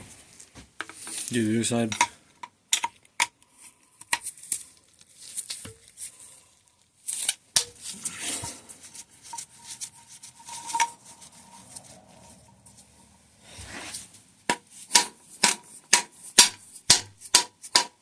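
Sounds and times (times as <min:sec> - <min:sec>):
metal tools clinking on bicycle fork: 0:07.6 - 0:13.1
faint metallic ringing tone: 0:08.5 - 0:13.4.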